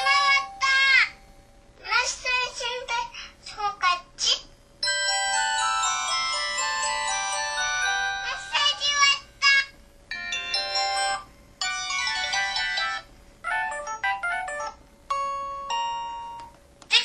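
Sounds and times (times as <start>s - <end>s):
phone ringtone chimes: 0.0s - 1.5s, 4.8s - 8.7s, 10.1s - 16.5s.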